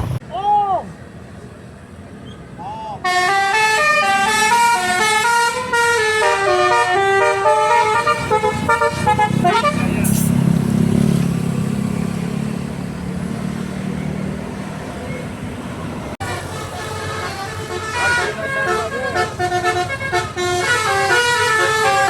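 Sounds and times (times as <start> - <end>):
bus engine rumbling: 0.0 - 22.0
multi-tone bus horn melody: 3.0 - 10.4, 16.1 - 22.0.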